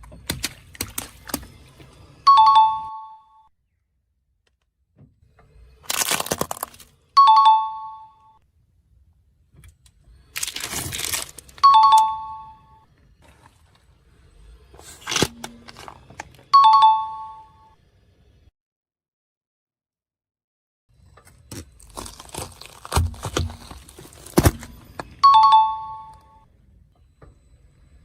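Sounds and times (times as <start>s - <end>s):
objects crunching under car tyre: 0.1s - 2.1s, 5.7s - 7.0s, 10.3s - 11.7s, 13.2s - 13.9s, 14.7s - 16.5s, 21.1s - 25.3s.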